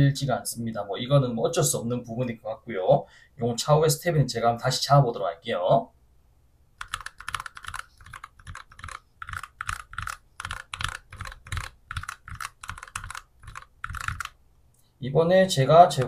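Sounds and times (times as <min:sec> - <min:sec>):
mechanical keyboard typing: 0:06.8 - 0:14.4.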